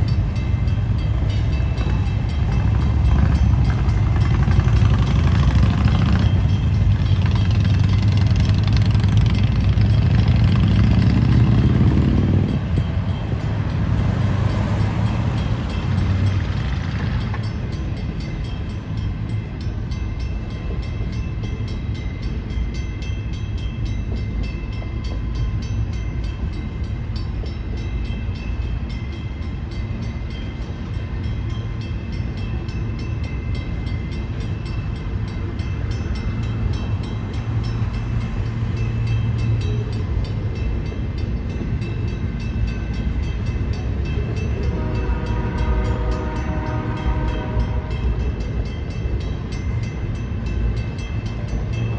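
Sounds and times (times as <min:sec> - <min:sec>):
train wheels rumbling on track: 0:00.0 - 0:51.9
train horn: 0:44.5 - 0:48.4.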